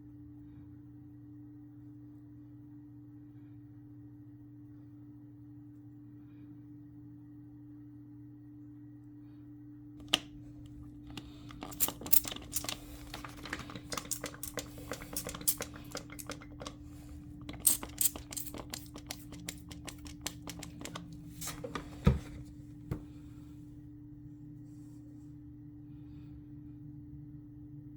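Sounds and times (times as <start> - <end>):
clicks crinkling and scraping: 10.0 - 22.6.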